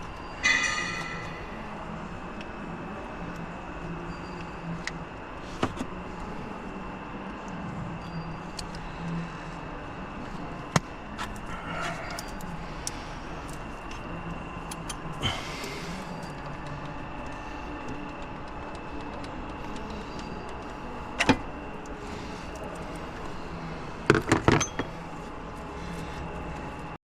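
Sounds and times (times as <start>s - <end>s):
steady low hum: 0.0s - 27.0s
socket wrench clinking on metal: 24.1s - 25.0s.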